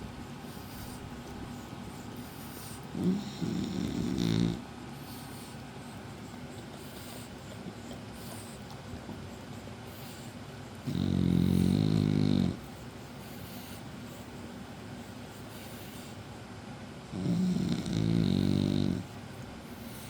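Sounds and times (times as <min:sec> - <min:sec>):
dog snoring: 0:00.0 - 0:05.5, 0:09.9 - 0:13.8, 0:17.1 - 0:20.0.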